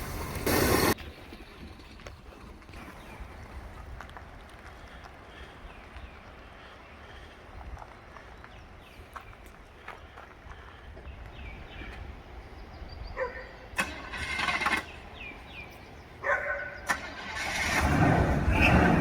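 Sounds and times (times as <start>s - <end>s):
car engine cranking and running: 13.8s - 15.6s, 16.7s - 19.0s.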